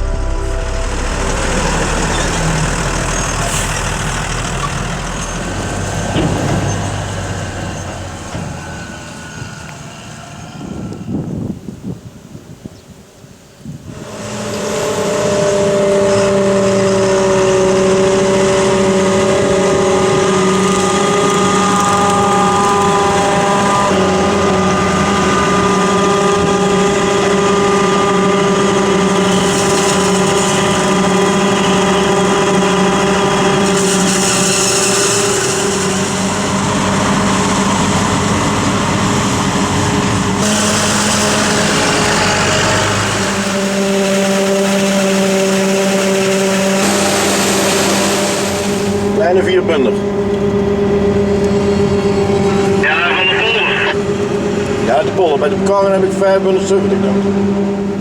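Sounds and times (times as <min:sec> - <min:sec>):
farm machinery droning: 0:00.0 - 0:11.5, 0:13.9 - 0:58.0.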